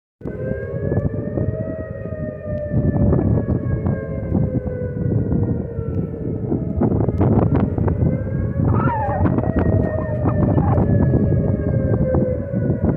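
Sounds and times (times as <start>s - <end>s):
tornado warning siren wailing: 0.2s - 12.9s
gusting low rumble: 2.6s - 12.9s.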